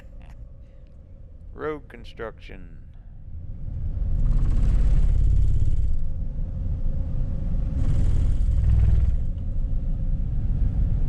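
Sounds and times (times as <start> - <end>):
rushing tyre and wind noise: 3.6 - 11.0.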